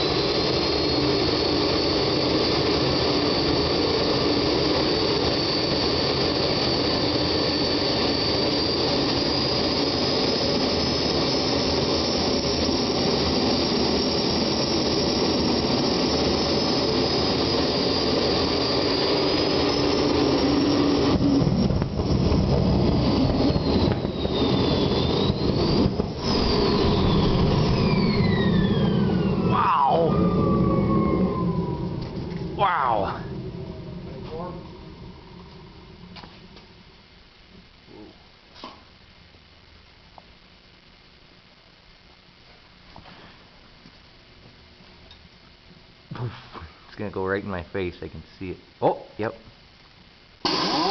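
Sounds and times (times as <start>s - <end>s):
jet engine roaring: 0.0s - 36.9s, 50.4s - 50.9s
high turbine whine: 0.0s - 50.9s.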